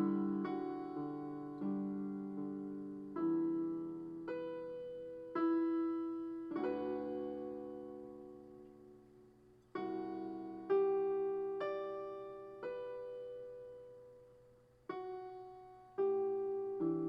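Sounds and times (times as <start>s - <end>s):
slow solo piano: 0.0s - 17.0s.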